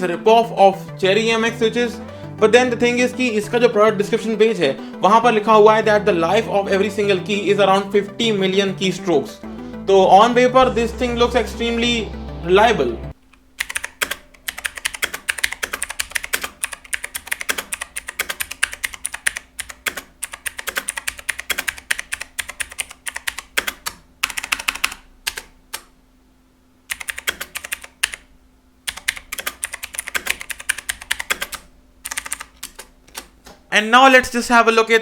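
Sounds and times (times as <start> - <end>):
typing on clicky keyboard: 13.6 - 25.8, 26.9 - 28.2, 28.9 - 33.3.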